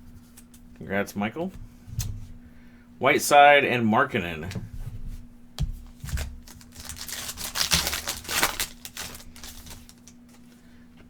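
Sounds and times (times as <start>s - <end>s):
faint steady hum: 0.0s - 11.0s
cards and wrapper crinkling: 5.9s - 10.6s.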